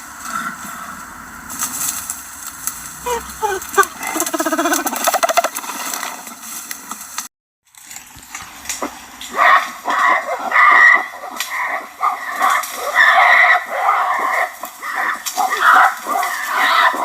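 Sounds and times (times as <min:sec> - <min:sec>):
gorilla calling: 0:00.2 - 0:05.6, 0:09.3 - 0:17.0.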